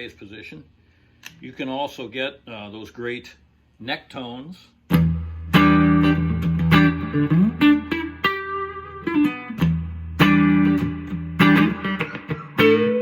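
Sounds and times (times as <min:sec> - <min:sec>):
clean electric guitar: 0:04.9 - 0:13.0.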